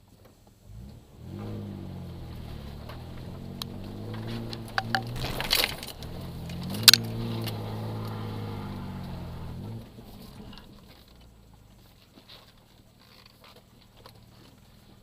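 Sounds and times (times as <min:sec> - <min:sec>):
engine running: 0:00.2 - 0:15.0
sharp knocks: 0:04.6 - 0:05.8.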